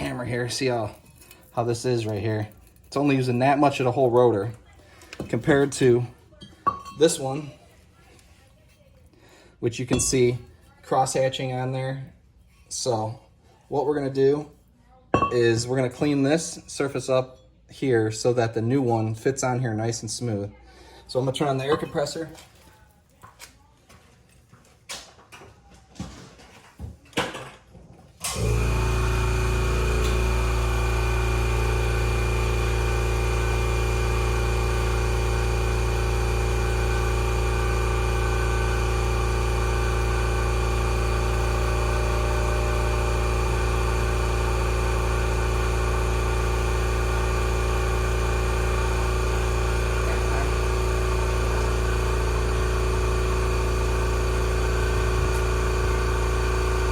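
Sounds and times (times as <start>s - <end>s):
air compressor running: 0.0s - 6.8s, 28.2s - 56.9s.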